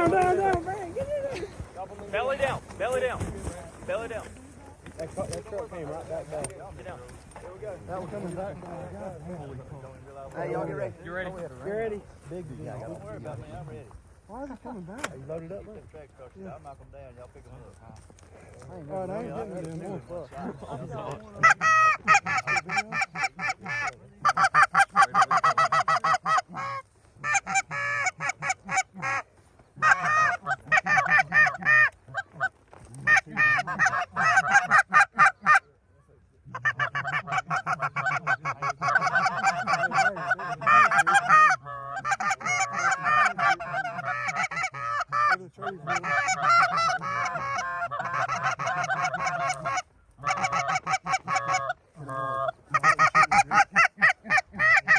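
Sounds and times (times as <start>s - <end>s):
geese honking and clucking: 0.0s - 9.6s, 20.6s - 35.8s, 36.4s - 54.9s.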